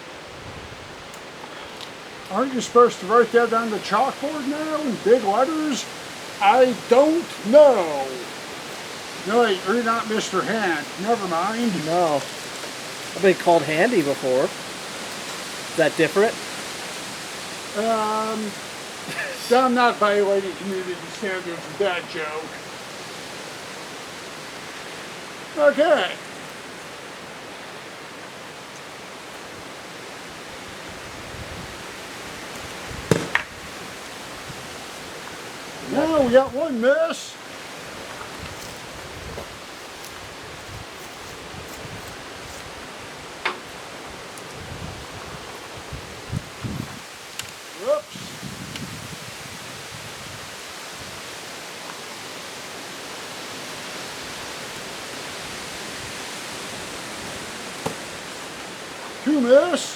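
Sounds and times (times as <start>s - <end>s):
wind noise on microphone: 0.0s - 1.1s, 30.5s - 36.7s, 37.8s - 51.5s
wind blowing: 0.0s - 59.8s
sharp knocks: 33.1s - 33.5s.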